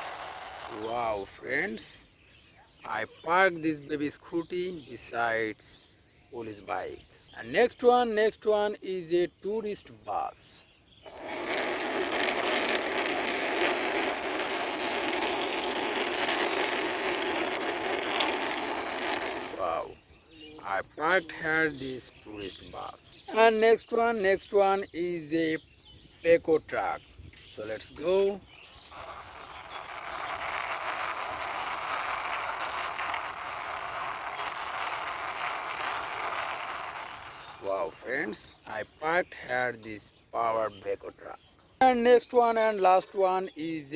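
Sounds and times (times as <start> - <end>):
plastic toy wheels rolling: 0.0 - 2.0, 11.1 - 19.9, 27.5 - 38.6.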